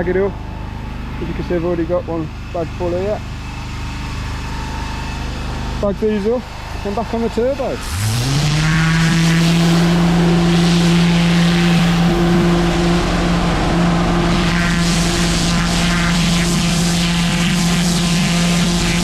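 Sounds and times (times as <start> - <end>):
pressure washer machine hum: 0.0 - 19.0
high-pressure water jet hissing: 6.1 - 19.0.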